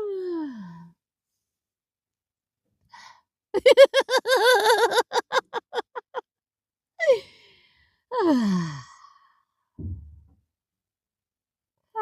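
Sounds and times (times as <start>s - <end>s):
person laughing: 3.6s - 6.1s.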